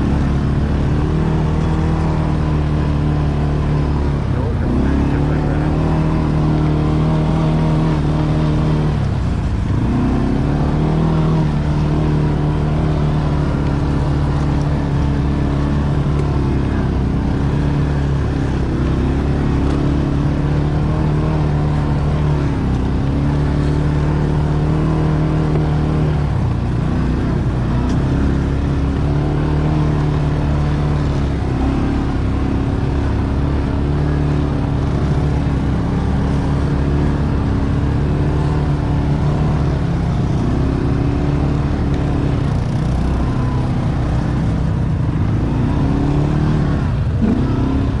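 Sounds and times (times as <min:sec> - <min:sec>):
atv engine revving under load: 0:00.0 - 0:48.0.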